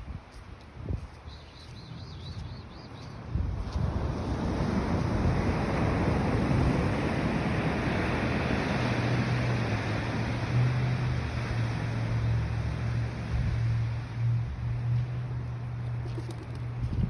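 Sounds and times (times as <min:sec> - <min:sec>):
wind on microphone: 0:03.2 - 0:08.5, 0:16.1 - 0:17.0
ocean surf: 0:04.0 - 0:14.0.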